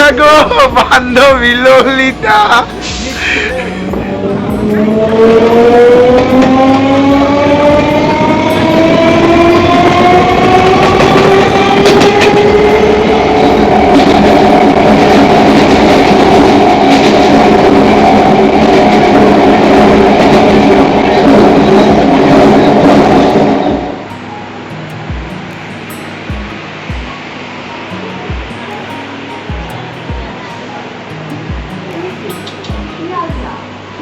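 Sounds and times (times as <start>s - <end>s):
train carriage rumble: 0.0s - 34.0s
train traction motors whining: 1.1s - 24.1s.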